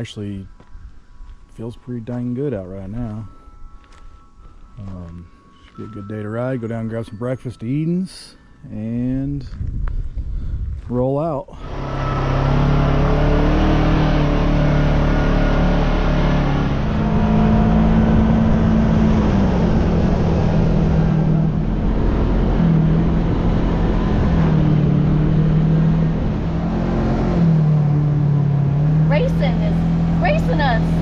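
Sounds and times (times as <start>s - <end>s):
road and wind noise: 0.0s - 31.0s
vehicle engine hum: 11.5s - 31.0s.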